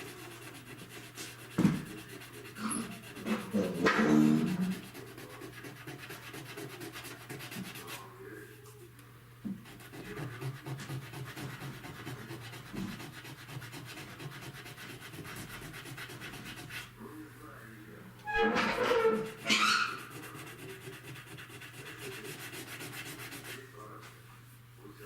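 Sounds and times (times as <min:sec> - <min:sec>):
sanding car body panel: 0:09.8 - 0:16.9, 0:19.7 - 0:23.6.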